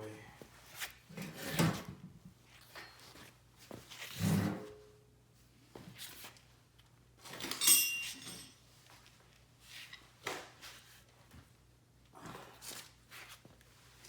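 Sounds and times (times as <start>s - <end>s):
metallic clink: 7.5s - 8.6s.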